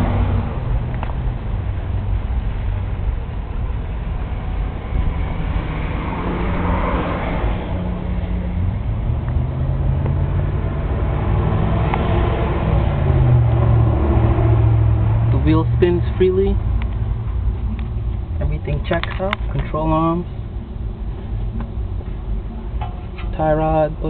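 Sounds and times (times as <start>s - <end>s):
vehicle engine humming: 0.0s - 24.0s.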